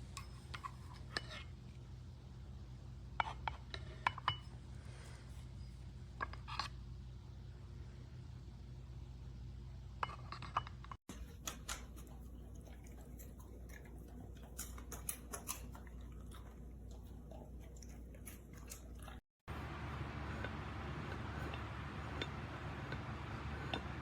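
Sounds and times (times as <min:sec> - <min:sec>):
dog eating from ceramic bowl: 0:11.1 - 0:24.0.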